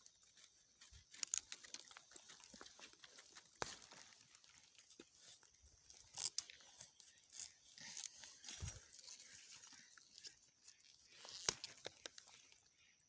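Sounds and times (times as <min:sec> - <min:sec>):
dry plants rustling and crackling: 0:00.0 - 0:12.9
stems snapping: 0:00.9 - 0:04.9, 0:05.9 - 0:08.8, 0:11.1 - 0:12.6.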